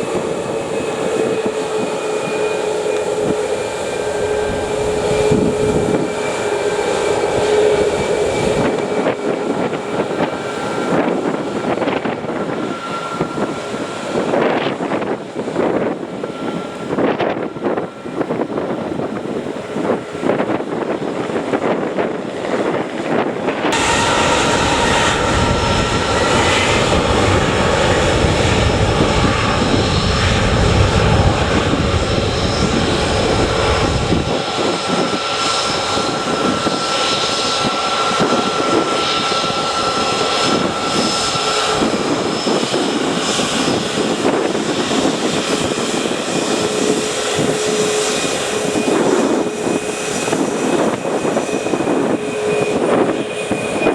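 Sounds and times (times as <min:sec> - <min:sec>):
jet engines whining: 0:00.0 - 0:53.9
deep rumble: 0:22.6 - 0:53.9.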